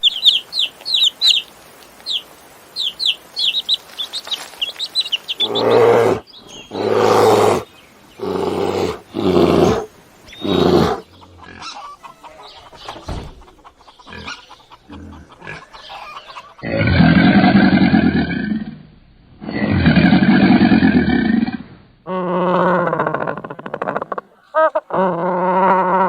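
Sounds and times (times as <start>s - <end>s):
long low animal calls: 5.4s - 12.0s, 14.1s - 26.0s
short farm animal calls: 8.2s - 12.5s.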